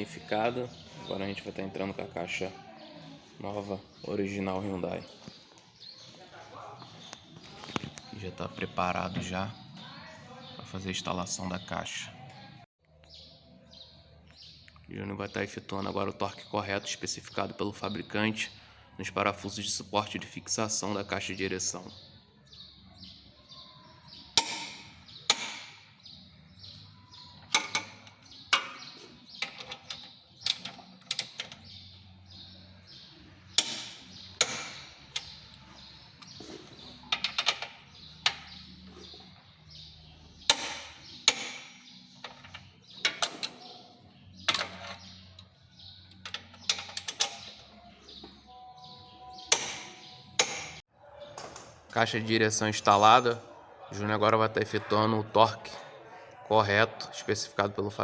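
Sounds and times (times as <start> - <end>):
metallic clicks of hand tools: 46.2 - 47.6.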